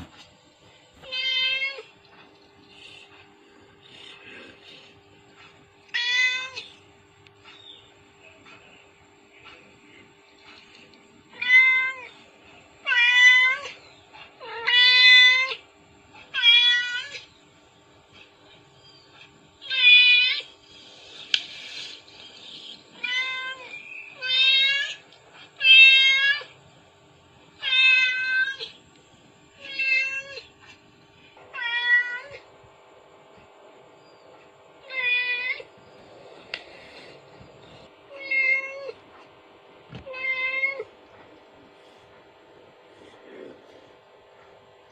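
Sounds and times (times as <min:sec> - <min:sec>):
cat meowing: 0:27.6 - 0:28.7.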